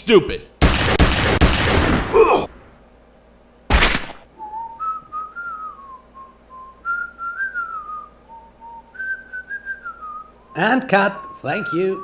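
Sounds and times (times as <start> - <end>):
person whistling a tune: 4.4 - 10.6, 11.2 - 12.0.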